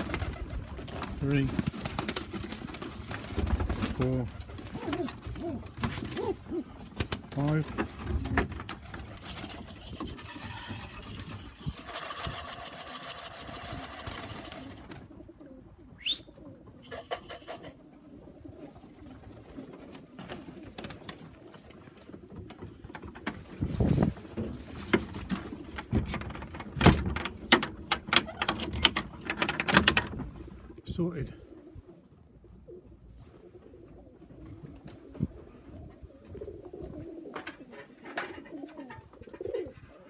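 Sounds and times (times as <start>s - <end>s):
rustling: 0.0s - 15.1s
pigeons cooing: 0.0s - 26.2s, 30.4s - 40.0s
short rising whistle: 16.0s - 16.3s.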